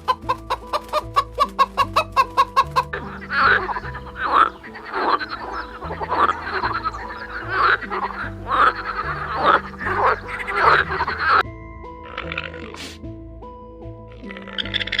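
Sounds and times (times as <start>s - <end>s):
music with stepping bass line: 0.0s - 14.2s
frog croaking: 1.6s - 11.4s, 12.0s - 13.0s, 14.1s - 15.0s.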